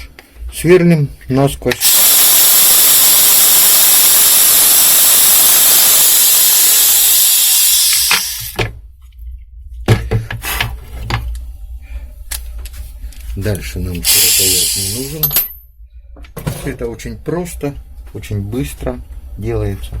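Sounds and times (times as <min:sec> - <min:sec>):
cordless drill boring: 0:01.8 - 0:08.6, 0:14.1 - 0:15.1.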